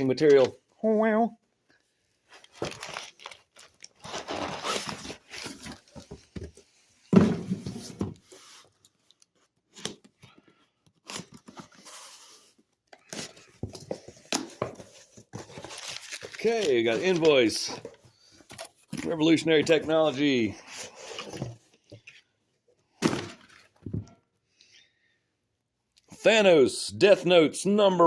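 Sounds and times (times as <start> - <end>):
packing material tearing and rustling: 2.4 - 6.0, 15.3 - 17.7.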